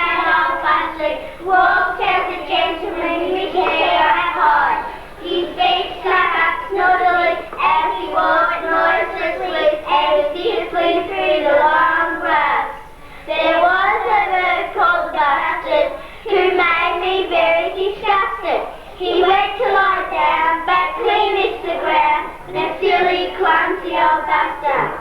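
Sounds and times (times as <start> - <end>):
children singing: 0.0 - 25.0.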